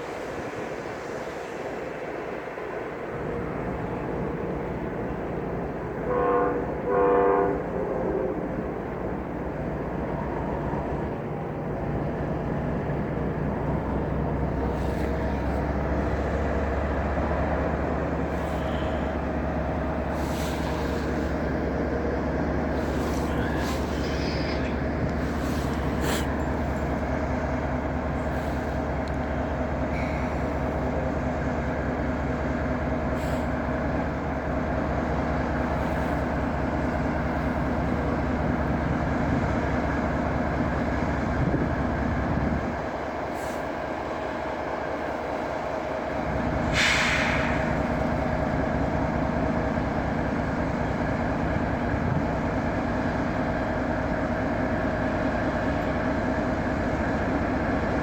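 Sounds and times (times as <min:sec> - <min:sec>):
train rumbling past: 0:00.0 - 0:58.0
burst of hiss: 0:46.7 - 0:48.0.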